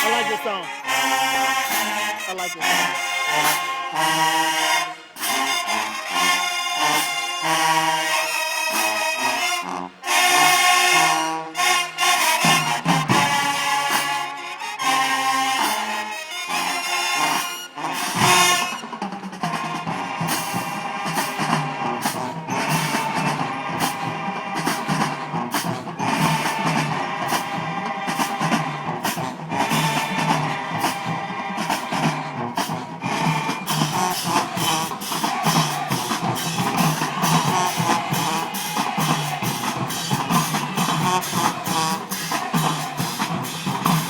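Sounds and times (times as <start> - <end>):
drums beating: 0.0 - 4.3, 18.1 - 44.0
marching band playing: 0.0 - 44.0.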